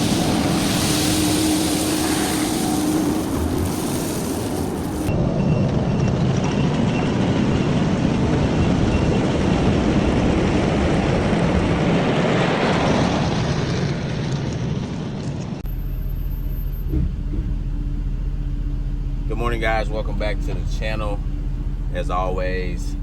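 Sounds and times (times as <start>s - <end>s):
low engine hum: 0.0s - 7.5s, 15.6s - 23.0s
loud vehicle noise: 0.0s - 14.9s, 15.6s - 23.0s.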